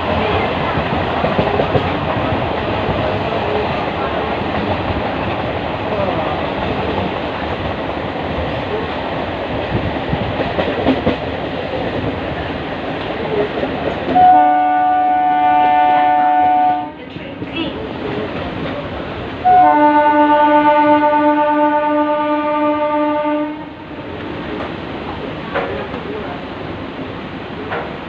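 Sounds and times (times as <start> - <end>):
train rumbling and rattling: 0.0 - 28.0
train horn: 14.1 - 17.0, 19.4 - 23.8.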